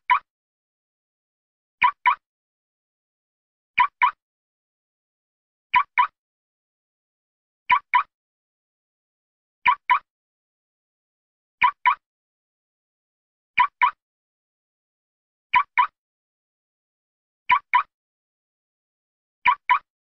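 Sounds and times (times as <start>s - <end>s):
car alarm double chirp: 9.7s - 10.1s.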